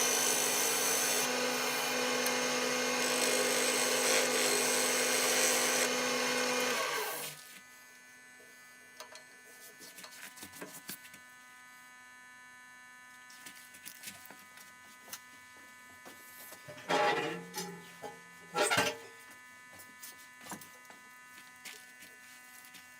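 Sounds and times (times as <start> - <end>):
power tool running and spinning down: 0.0 - 7.4.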